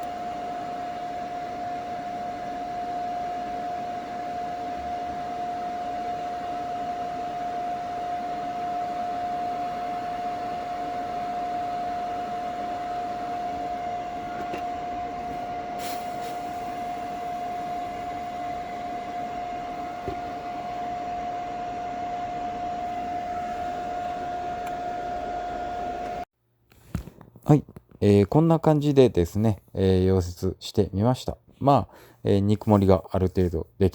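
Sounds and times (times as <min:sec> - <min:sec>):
welder hissing and humming: 0:09.8 - 0:26.2.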